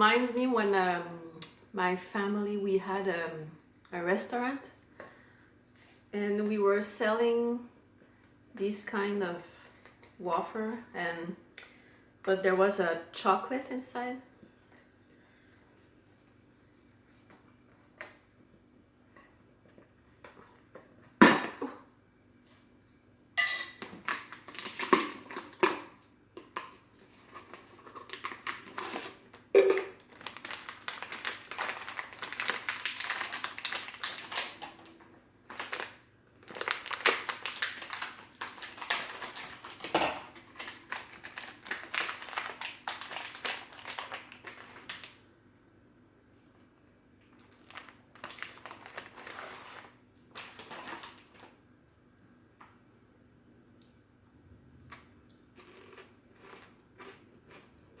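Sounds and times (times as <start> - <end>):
dry crunching of cookie: 26.6 - 45.2, 47.2 - 51.4, 55.5 - 57.8.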